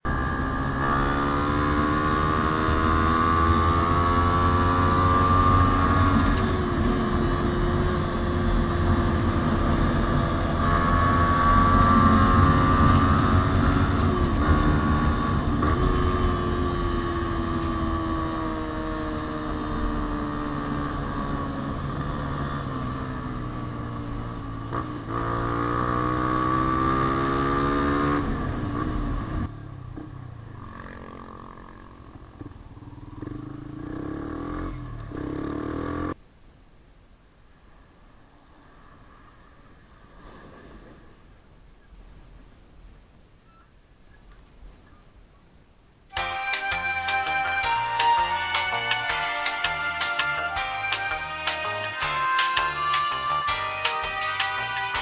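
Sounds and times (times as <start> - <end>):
motorcycle engine revving: 0.0 - 36.2, 49.6 - 55.0.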